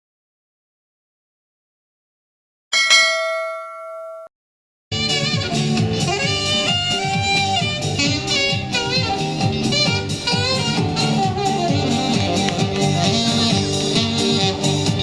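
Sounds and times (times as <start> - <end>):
bell ringing: 2.7 - 4.3
music with steady beat: 5.0 - 15.0.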